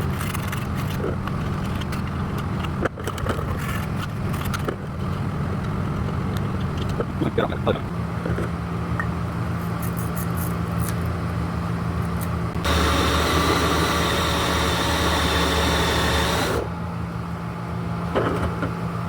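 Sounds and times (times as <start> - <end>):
power drill running: 12.6 - 16.8.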